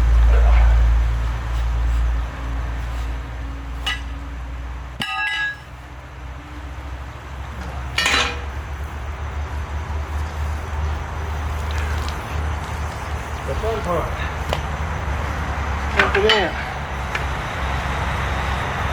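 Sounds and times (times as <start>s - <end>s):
steady low rumble: 0.0s - 18.9s
metal clinking and clanking: 3.8s - 4.2s, 5.0s - 5.9s, 7.6s - 8.8s.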